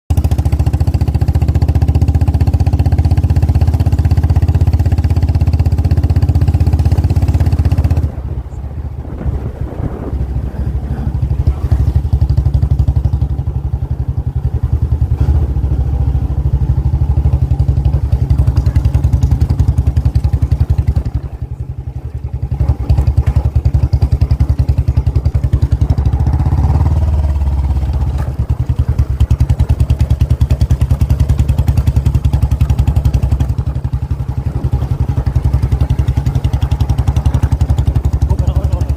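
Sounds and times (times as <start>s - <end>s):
motorcycle engine running: 0.1s - 38.9s.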